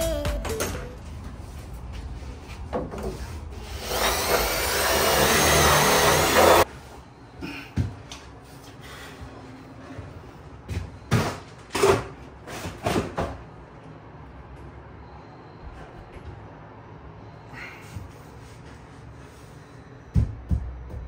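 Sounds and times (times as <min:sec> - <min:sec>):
small electric motor running: 0:03.7 - 0:06.6.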